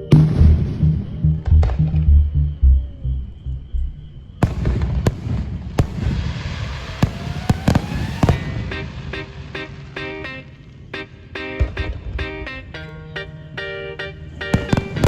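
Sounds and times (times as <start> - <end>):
background music: 0.0 - 4.4, 8.0 - 15.0
rising firework whistle: 0.1 - 10.6
fireworks bangs and crackles: 4.4 - 10.9, 14.5 - 15.0
guitar music: 8.4 - 15.0.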